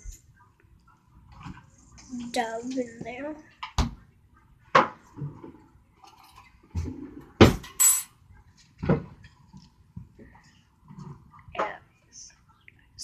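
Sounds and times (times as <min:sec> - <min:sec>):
high ringing clink: 0:07.8 - 0:08.2.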